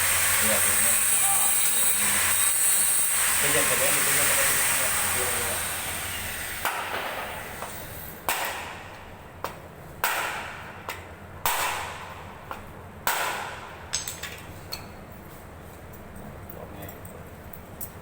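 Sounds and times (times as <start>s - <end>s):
hammer striking metal motor: 0.0s - 8.9s.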